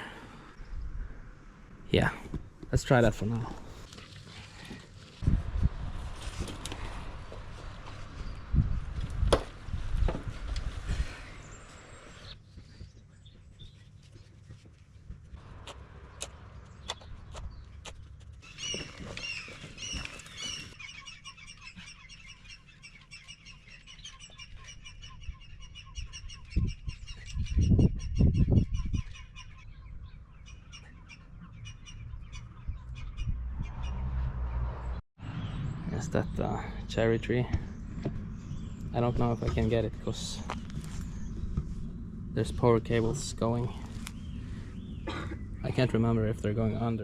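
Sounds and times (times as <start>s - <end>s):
small birds chirping: 11.0s - 47.0s.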